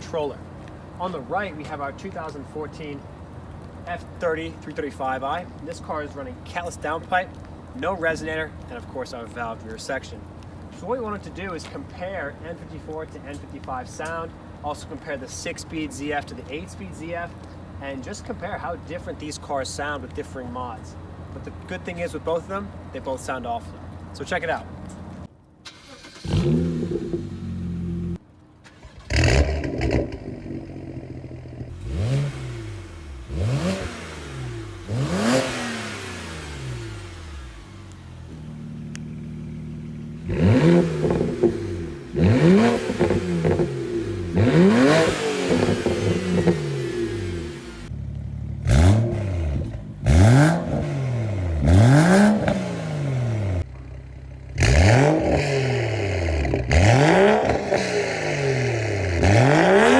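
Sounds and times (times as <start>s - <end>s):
car engine revving: 25.7s - 53.8s, 54.4s - 59.9s.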